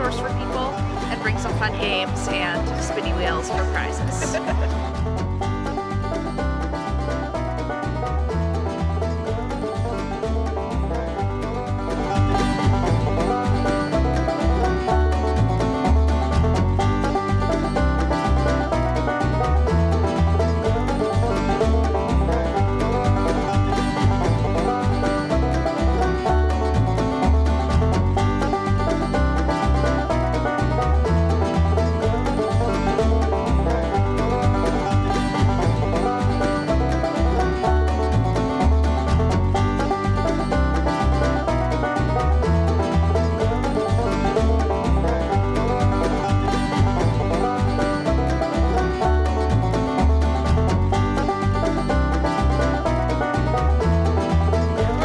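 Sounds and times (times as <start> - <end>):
music with pulsing bass beat: 0.0 - 55.0.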